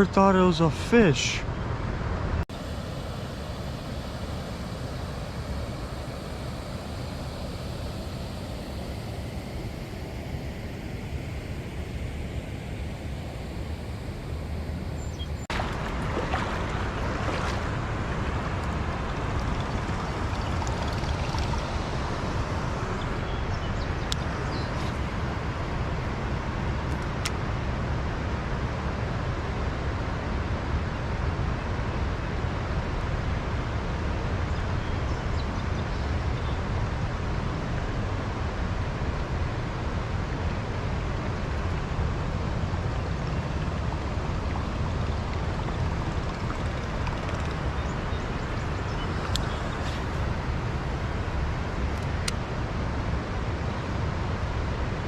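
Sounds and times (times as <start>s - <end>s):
river water flowing: 2.3s - 32.1s, 36.8s - 55.0s
wind on microphone: 2.6s - 26.9s.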